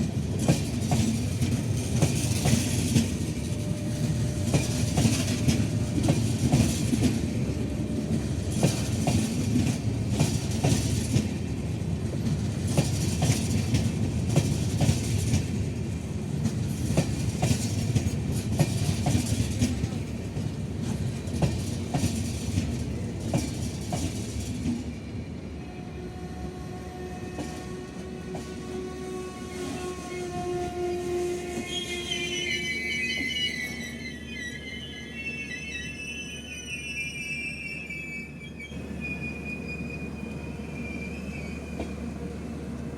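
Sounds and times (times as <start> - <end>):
train wheels rumbling on rails: 0.0 - 42.9
clacks over rail joints: 0.3 - 7.4, 8.0 - 11.4, 12.0 - 15.6, 16.4 - 24.9.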